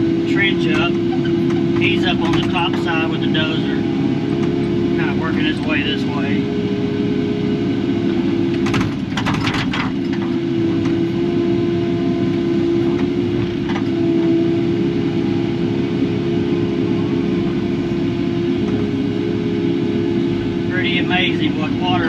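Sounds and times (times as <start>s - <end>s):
constant whine: 0.0s - 22.0s
excavator diesel engine running: 0.0s - 22.0s
sharp knocks: 8.5s - 11.0s.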